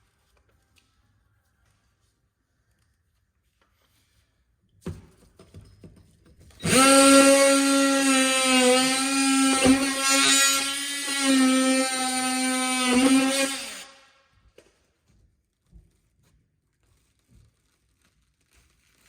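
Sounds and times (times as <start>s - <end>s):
power tool motor whine: 6.6s - 14.0s.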